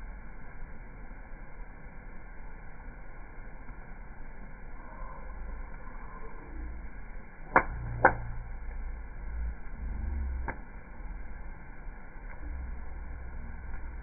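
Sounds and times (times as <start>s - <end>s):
steady low rumble: 0.0s - 14.0s
campfire popping and cracking: 3.1s - 14.0s.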